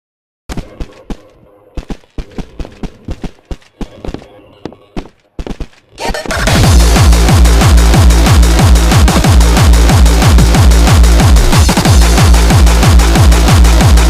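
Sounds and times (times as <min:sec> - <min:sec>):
electronic dance music: 0:06.0 - 0:14.0.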